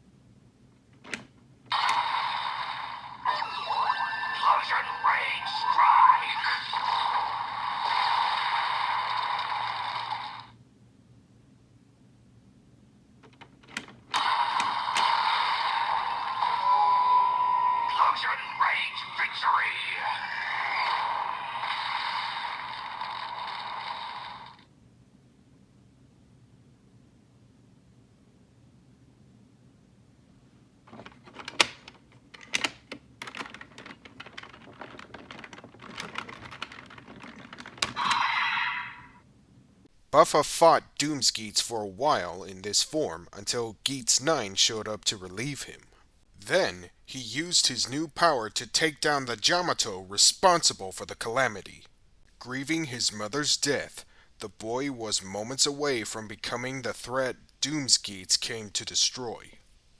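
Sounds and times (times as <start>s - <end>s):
toy speaker sound effect: 1.7s - 10.5s, 14.2s - 24.6s, 37.8s - 39.2s.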